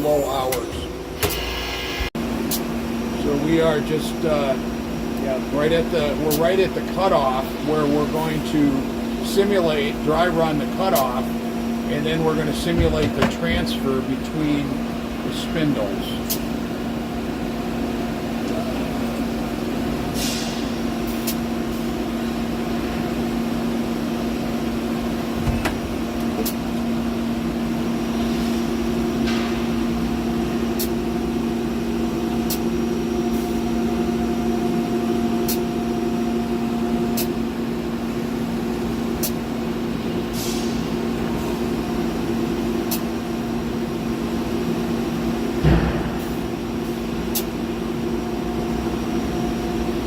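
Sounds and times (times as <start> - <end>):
high machine whine: 0.0 - 50.0
machine hum: 0.0 - 50.0
machine thump: 12.7 - 13.7, 45.6 - 46.4.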